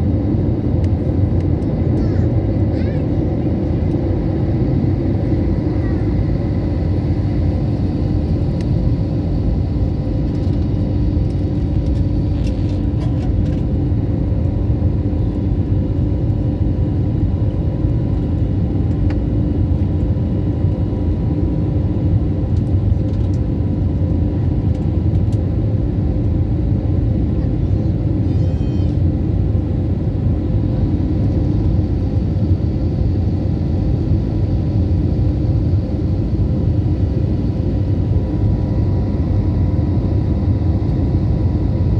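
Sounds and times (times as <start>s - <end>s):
jet engine rumble in cabin: 0.0s - 41.9s.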